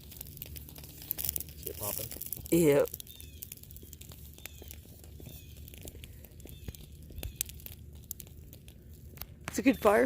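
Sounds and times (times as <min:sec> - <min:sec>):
gel balls burning and crackling: 0:00.0 - 0:10.0.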